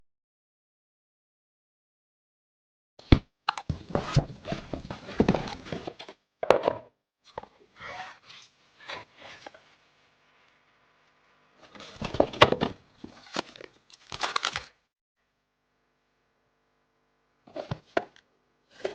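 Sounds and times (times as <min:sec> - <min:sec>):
packaging rustling: 0:13.0 - 0:14.8.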